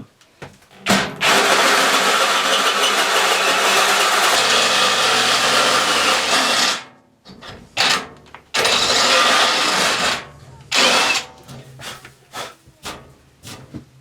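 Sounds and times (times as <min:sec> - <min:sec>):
drill boring through steel: 0:00.8 - 0:06.9, 0:07.8 - 0:11.6.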